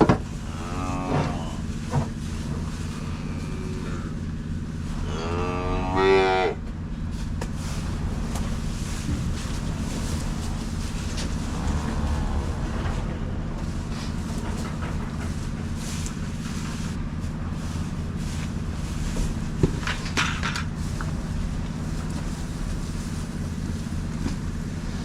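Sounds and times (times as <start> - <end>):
tractor engine running: 0.0 - 25.0.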